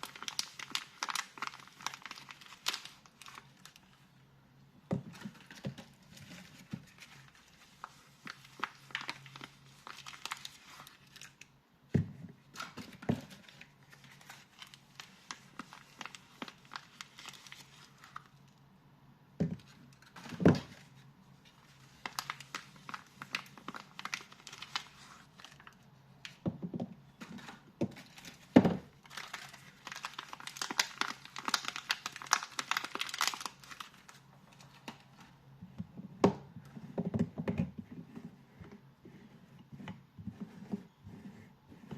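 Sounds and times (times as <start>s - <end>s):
wrapper crinkling and tearing: 0.0s - 4.0s, 5.1s - 11.6s, 12.5s - 18.5s, 19.6s - 26.4s, 27.3s - 35.3s.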